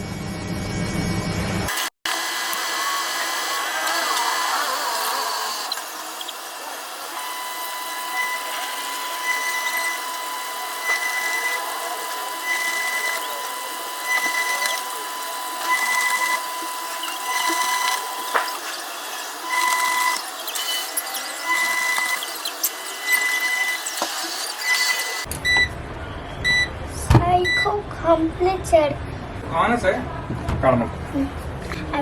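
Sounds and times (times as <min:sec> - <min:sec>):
washing machine running: 0:00.0 - 0:25.6.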